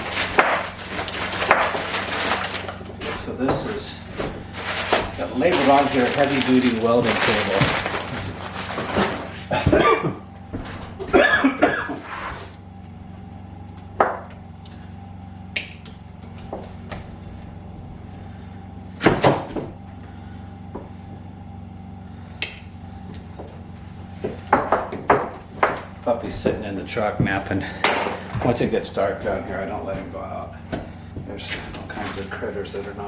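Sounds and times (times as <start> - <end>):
parts and packaging handled: 0.0 - 9.8
steady low hum: 0.0 - 33.0.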